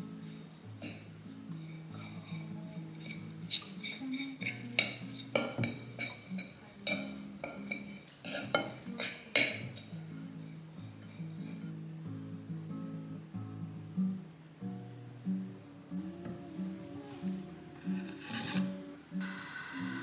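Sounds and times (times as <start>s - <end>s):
soft background music: 0.0s - 20.0s
utensils clinking against dishes: 0.4s - 11.7s, 17.8s - 18.9s.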